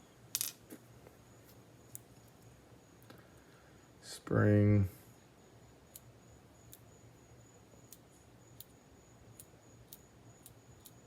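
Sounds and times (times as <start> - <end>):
faint steady hum: 0.0 - 11.0
small metal parts clicking: 0.3 - 0.6.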